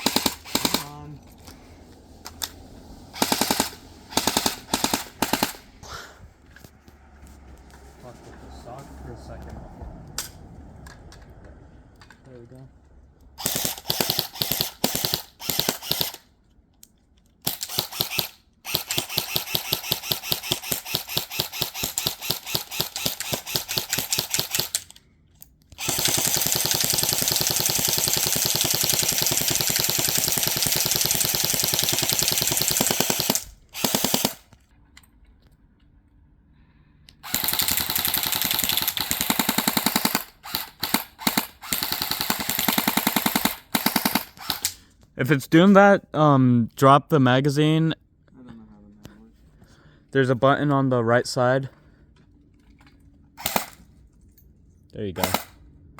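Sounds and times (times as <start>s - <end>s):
airsoft rifle firing bursts: 0.0s - 1.0s, 3.2s - 5.7s, 13.4s - 16.2s, 17.5s - 24.8s, 25.8s - 34.5s, 37.2s - 44.8s, 53.4s - 53.8s.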